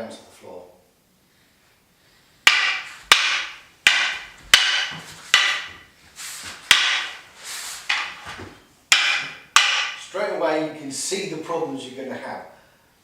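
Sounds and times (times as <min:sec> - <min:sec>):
walking canes clacking: 0:02.4 - 0:10.0.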